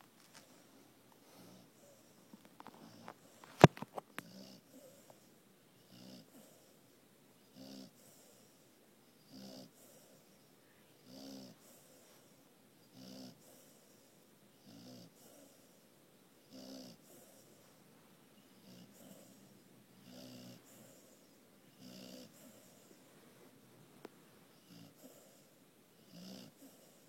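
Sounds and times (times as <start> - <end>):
rhythmic snoring: 1.2 - 6.8, 7.4 - 10.4, 11.0 - 12.0, 12.8 - 17.7, 18.5 - 23.0, 24.5 - 27.0.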